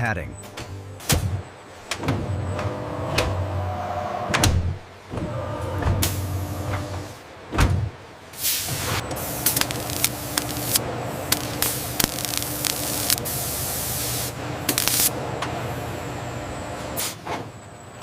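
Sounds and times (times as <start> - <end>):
spray-like hiss: 8.4 - 15.1
sharp clicks: 9.4 - 13.2, 14.7 - 15.1.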